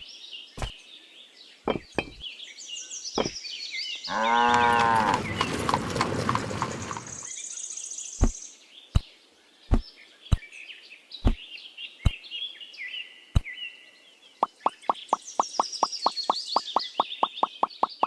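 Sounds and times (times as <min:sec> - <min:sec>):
birds chirping: 0:00.0 - 0:18.0
sharp knocks: 0:01.7 - 0:02.2
rapid light taps: 0:14.4 - 0:18.0.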